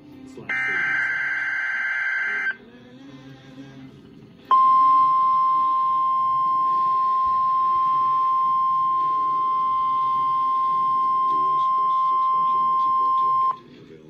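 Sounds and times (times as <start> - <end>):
harsh data warble: 0.5 - 2.6
steady loud alarm tone: 0.5 - 2.6, 4.5 - 13.6.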